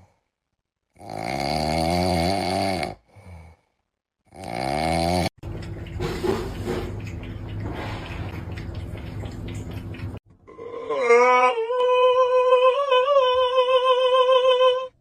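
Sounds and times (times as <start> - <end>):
animal snoring: 1.0 - 3.4, 4.3 - 5.3.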